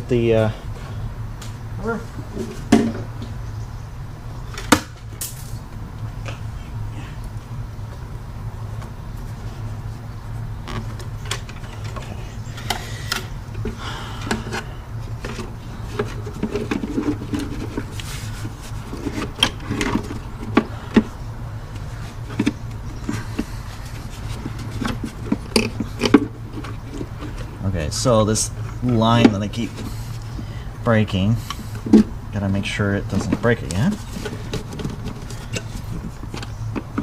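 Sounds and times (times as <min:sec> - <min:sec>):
steady low hum: 0:00.0 - 0:37.0
parts clicking and rubbing: 0:10.6 - 0:30.6, 0:33.0 - 0:37.0.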